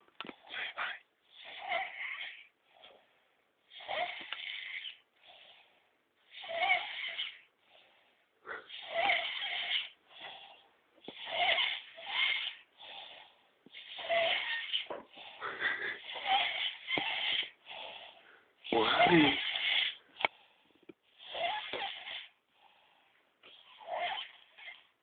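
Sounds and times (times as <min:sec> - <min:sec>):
pet snoring: 0:00.4 - 0:03.1, 0:03.7 - 0:05.7, 0:06.3 - 0:20.5, 0:21.1 - 0:25.0
faint breath: 0:07.6 - 0:08.9, 0:17.3 - 0:18.6, 0:22.2 - 0:23.8.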